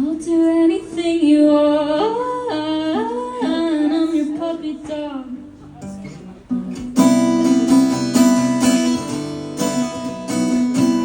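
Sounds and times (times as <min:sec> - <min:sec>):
acoustic guitar strumming chords: 0:02.6 - 0:11.0.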